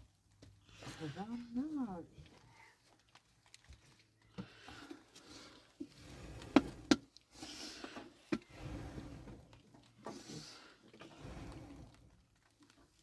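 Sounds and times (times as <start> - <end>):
soft rustling: 0.1 - 13.0.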